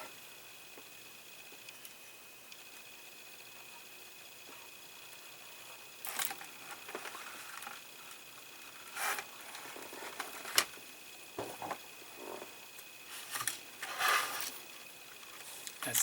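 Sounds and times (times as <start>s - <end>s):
plastic parts rustling and scraping: 6.0s - 10.8s, 13.1s - 16.0s.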